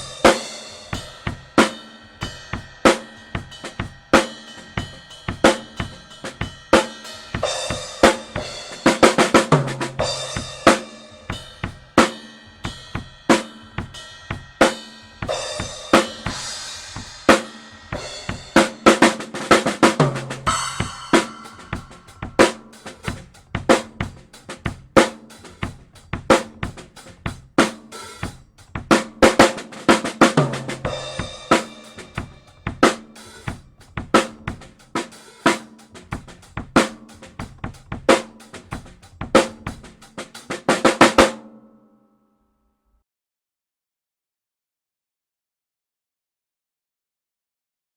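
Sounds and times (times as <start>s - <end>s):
cymbal crashes: 0.0s - 9.3s, 10.0s - 19.4s, 20.2s - 23.2s, 30.8s - 33.6s
drum kit groove: 0.0s - 41.6s.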